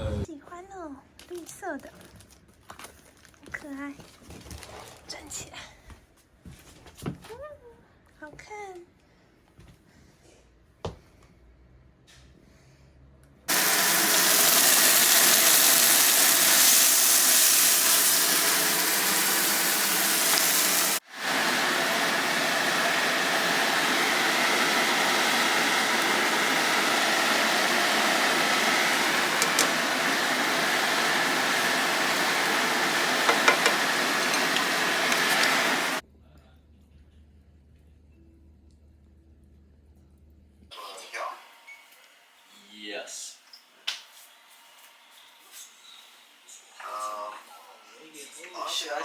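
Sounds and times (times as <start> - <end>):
loud rushing hiss: 13.5 - 36.0.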